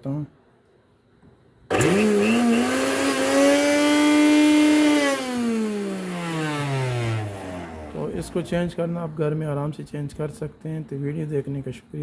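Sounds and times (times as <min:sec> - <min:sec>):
blender motor whining: 0:01.7 - 0:08.1.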